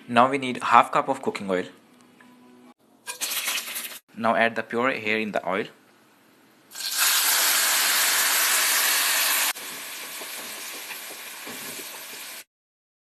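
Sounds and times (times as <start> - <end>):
food sizzling in hot oil: 3.1 - 4.0, 6.7 - 12.5.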